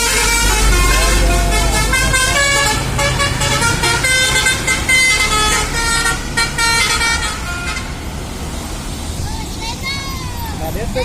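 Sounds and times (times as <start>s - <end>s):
bus musical horn playing a tune: 0.0s - 8.1s.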